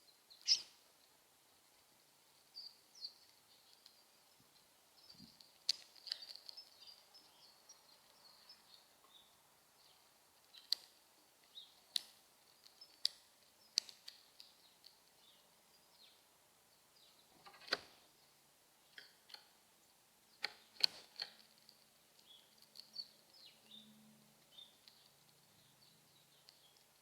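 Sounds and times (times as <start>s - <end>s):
faint high chirps: 0.3s - 0.8s
bird cracking seeds: 5.3s - 7.0s.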